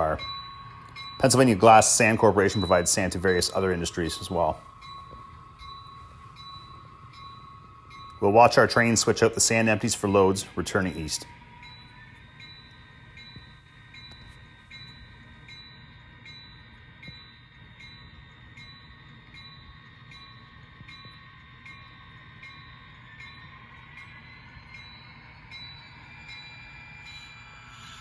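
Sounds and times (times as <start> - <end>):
engine whine rising in pitch: 0.0 - 28.0
locomotive bell ringing: 0.0 - 28.0.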